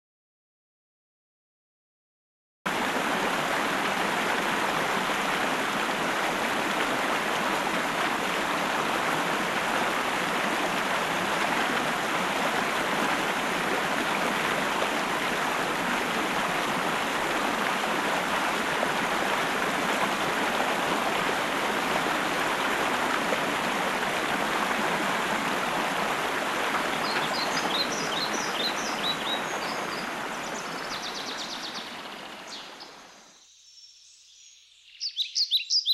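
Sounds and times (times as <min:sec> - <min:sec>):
stream water running: 0:02.7 - 0:33.3
bird chirping: 0:27.0 - 0:30.0, 0:30.6 - 0:35.9.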